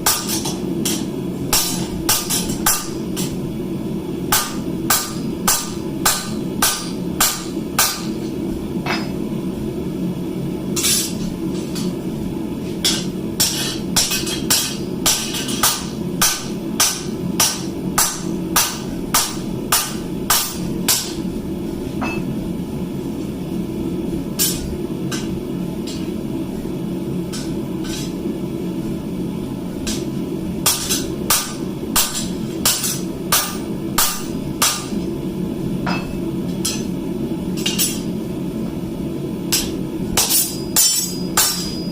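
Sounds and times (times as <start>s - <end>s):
hammer striking steel on anvil: 0.0s - 3.4s, 4.3s - 9.2s, 12.8s - 21.2s, 22.0s - 22.3s, 24.4s - 26.1s, 27.3s - 28.1s, 29.8s - 35.1s, 35.8s - 36.9s, 37.6s - 38.1s, 39.5s - 41.9s.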